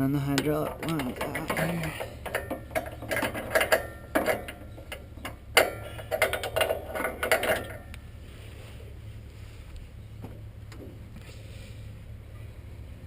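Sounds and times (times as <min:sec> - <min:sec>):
hose couplers rattling and clinking: 0:00.0 - 0:08.0
tractor engine idling: 0:00.0 - 0:13.0.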